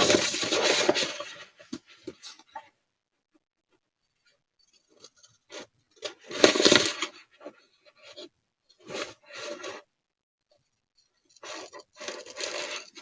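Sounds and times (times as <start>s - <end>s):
paper rustling: 0.0s - 2.4s, 4.9s - 8.2s, 11.4s - 13.0s.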